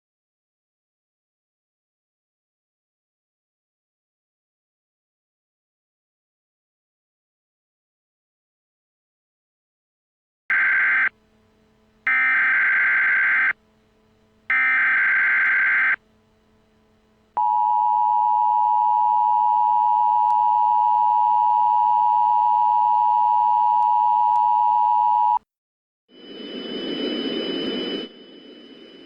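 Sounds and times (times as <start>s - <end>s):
digital data tone bursts: 10.5s - 11.1s, 12.1s - 13.6s, 14.5s - 16.0s
two-tone attention signal: 10.5s - 11.1s, 12.1s - 13.6s, 14.5s - 16.0s.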